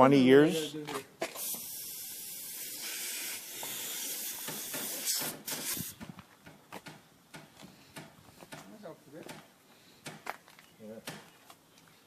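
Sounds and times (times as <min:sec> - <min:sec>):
compressed air hissing: 0:01.3 - 0:06.1.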